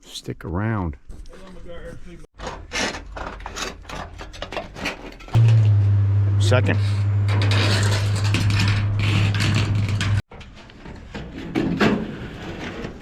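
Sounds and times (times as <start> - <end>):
low motor hum: 5.4 - 10.2
clattering: 7.2 - 10.2.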